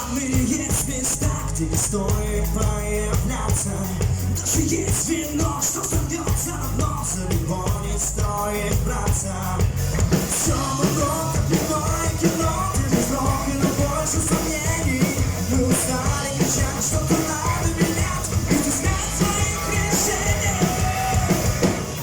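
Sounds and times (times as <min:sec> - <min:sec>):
person singing: 0:00.0 - 0:22.0
rock band playing live: 0:00.0 - 0:22.0.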